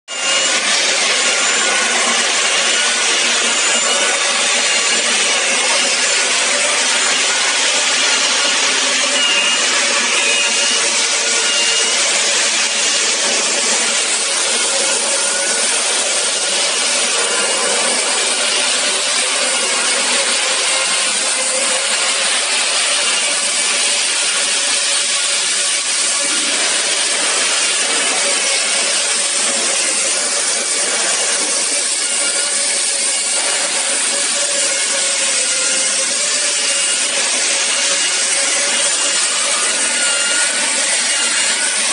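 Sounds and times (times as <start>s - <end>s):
line boring machine rasping: 0.1s - 41.9s
short high squeals: 9.0s - 12.0s.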